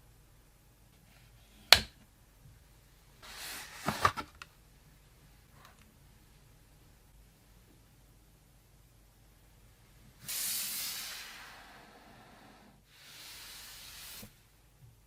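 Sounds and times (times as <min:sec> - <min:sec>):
hissing bursts: 0:10.2 - 0:14.4.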